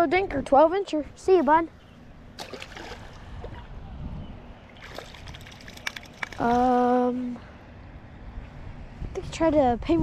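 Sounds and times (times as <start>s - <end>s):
water sloshing and trickling: 2.3s - 3.7s, 4.6s - 6.9s.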